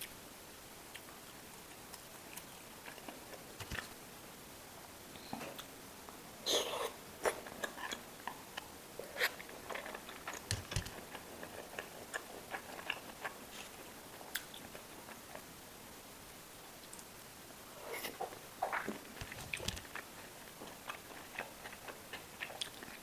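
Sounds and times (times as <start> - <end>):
person chewing wetly: 7.2 - 15.5, 17.9 - 23.0.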